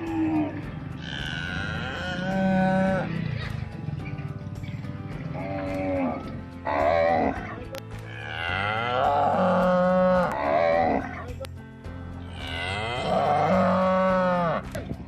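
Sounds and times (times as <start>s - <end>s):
cow mooing: 0.0s - 3.5s, 8.2s - 11.2s, 12.3s - 14.8s.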